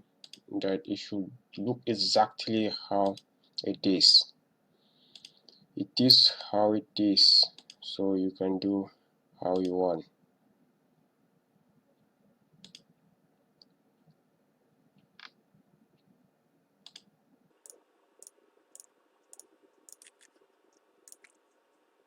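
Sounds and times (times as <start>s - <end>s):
computer mouse clicks: 0.2s - 0.5s, 3.0s - 3.3s, 5.1s - 5.6s, 7.5s - 7.8s, 12.6s - 12.9s, 16.8s - 21.4s.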